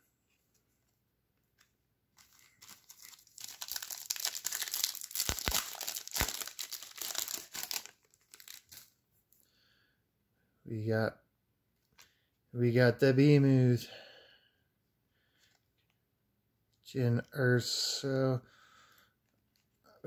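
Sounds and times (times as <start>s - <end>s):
wrapper being torn and crinkled: 2.2s - 8.9s.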